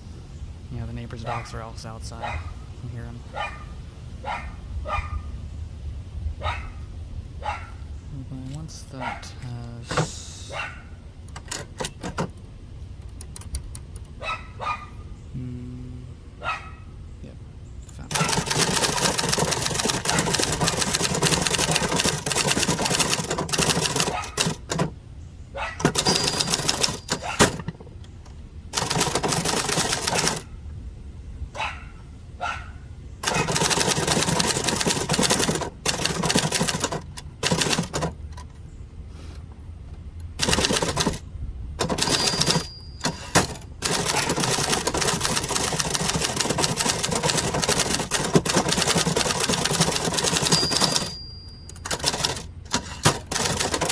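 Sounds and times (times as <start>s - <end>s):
manual typewriter key strikes: 11.2s - 12.4s, 13.0s - 14.2s, 18.1s - 25.0s, 25.8s - 30.4s, 33.2s - 38.6s, 40.2s - 41.2s, 41.8s - 53.9s
typewriter bell ring: 18.1s - 24.9s, 25.8s - 27.7s, 28.8s - 30.4s, 33.2s - 38.2s, 40.4s - 41.2s, 41.8s - 53.9s.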